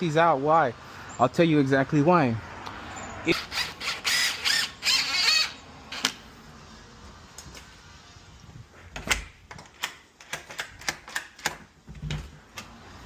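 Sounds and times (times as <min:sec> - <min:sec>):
squeaky high-pitched scraping: 0:02.8 - 0:06.1
sharp clicks and knocks: 0:08.9 - 0:12.8.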